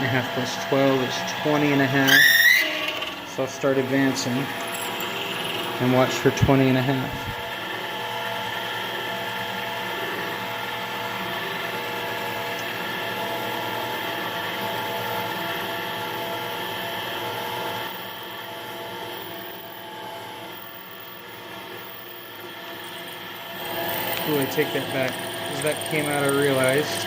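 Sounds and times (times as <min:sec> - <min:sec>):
metal lathe motor and gear whine: 0:00.0 - 0:27.0
drill bit cutting aluminium: 0:02.0 - 0:07.1, 0:20.6 - 0:27.0.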